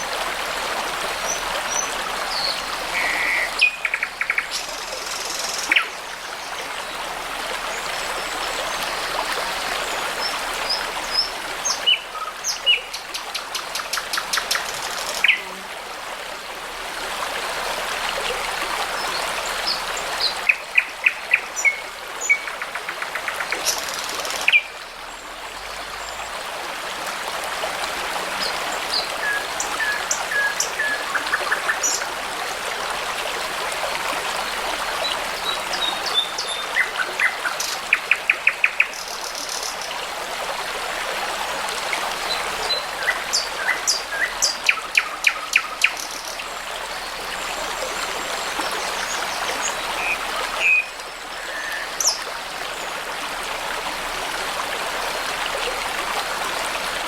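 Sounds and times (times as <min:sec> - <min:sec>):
babbling brook: 0:00.0 - 0:57.0
songbirds singing: 0:35.0 - 0:40.0.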